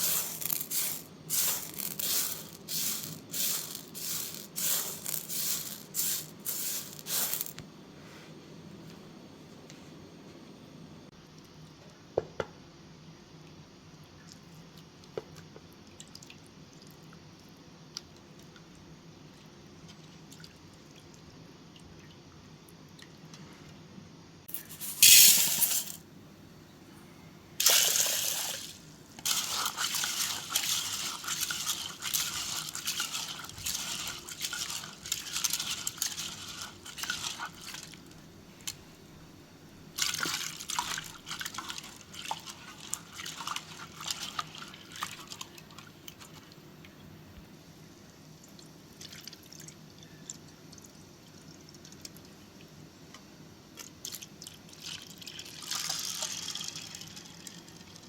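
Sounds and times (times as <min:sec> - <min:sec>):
water pouring and splashing: 0:27.6 - 0:38.2, 0:39.9 - 0:46.4.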